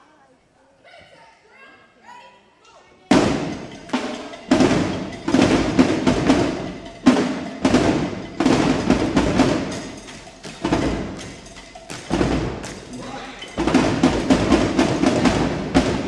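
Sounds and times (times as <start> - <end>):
snare and bass drums playing: 3.1 - 16.0.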